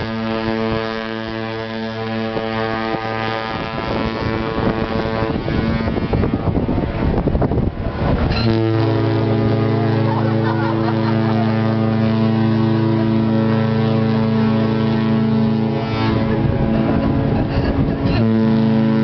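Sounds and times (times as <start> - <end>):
ship horn long deep blast: 0.0 - 19.0
wind buffeting microphone: 0.0 - 19.0.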